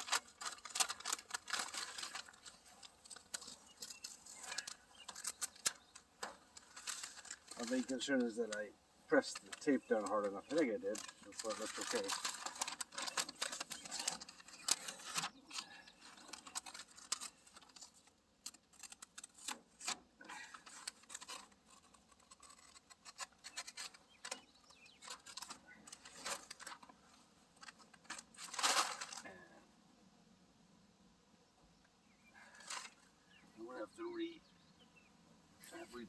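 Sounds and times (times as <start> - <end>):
masking tape peeling: 0.0 - 7.8, 9.5 - 26.8.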